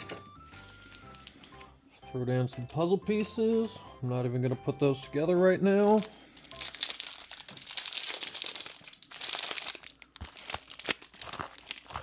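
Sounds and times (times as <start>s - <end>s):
snack wrapper crinkling: 0.5s - 1.6s, 6.0s - 12.0s.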